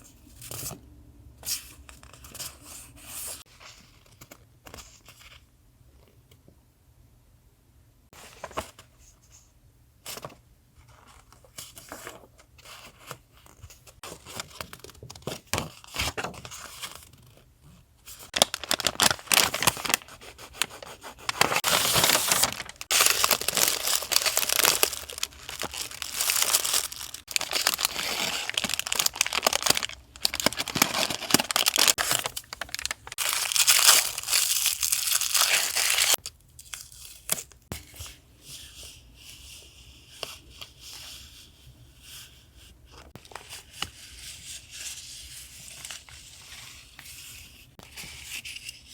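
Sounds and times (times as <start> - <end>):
paper tearing and crinkling: 18.3 - 36.2.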